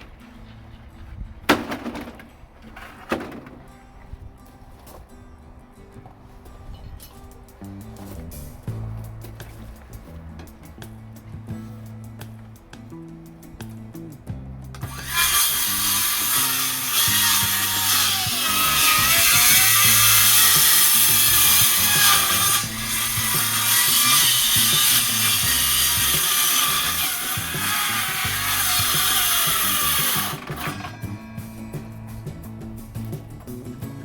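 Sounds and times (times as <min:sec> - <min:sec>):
power saw cutting wood: 0:14.8 - 0:31.6.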